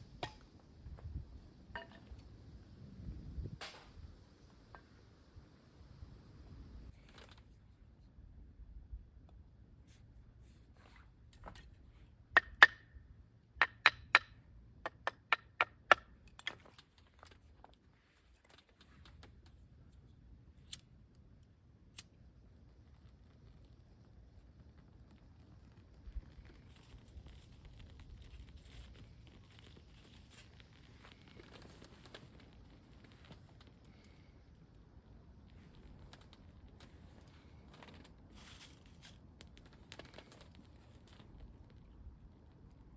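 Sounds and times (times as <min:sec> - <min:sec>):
wind rumble on microphone: 0:00.7 - 0:04.6
wooden knocks of splitting firewood: 0:12.4 - 0:12.9, 0:13.6 - 0:17.3.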